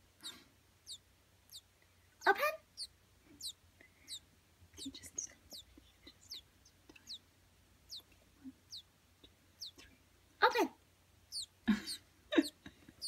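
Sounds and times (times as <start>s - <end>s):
baby bird peeping: 0.2s - 13.0s.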